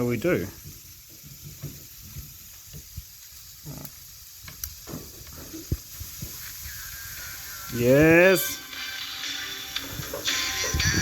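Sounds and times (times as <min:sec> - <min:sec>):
steady hiss: 0:00.0 - 0:11.0
clicks and crackles: 0:03.7 - 0:06.4.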